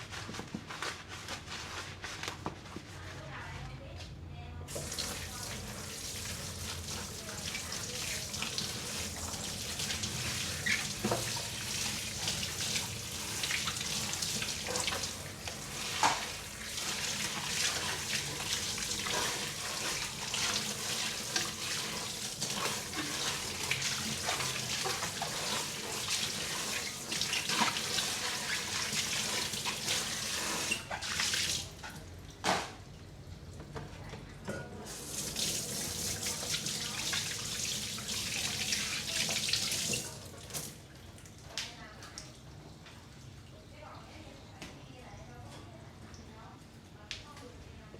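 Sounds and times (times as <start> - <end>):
tap water running into sink: 4.7 - 32.8, 34.8 - 40.8
dishes clinking: 34.5 - 34.9.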